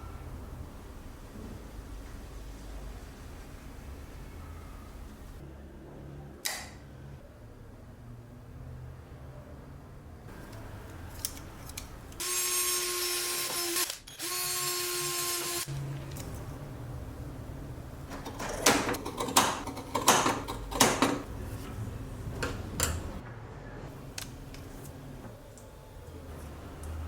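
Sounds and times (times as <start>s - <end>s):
knocks and clicks of tools: 18.1s - 21.4s.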